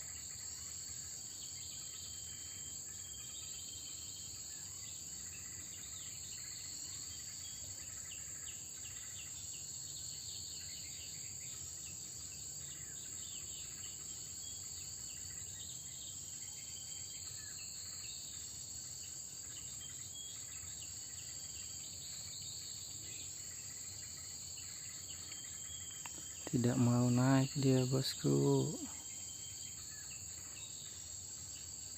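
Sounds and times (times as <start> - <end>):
insects droning: 0.0 - 31.9
small birds chirping: 19.2 - 31.9.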